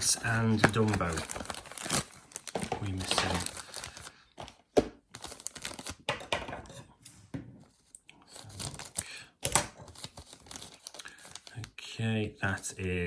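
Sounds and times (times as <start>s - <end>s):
packaging tearing and crinkling: 0.0s - 4.2s, 5.1s - 6.1s, 8.3s - 11.7s.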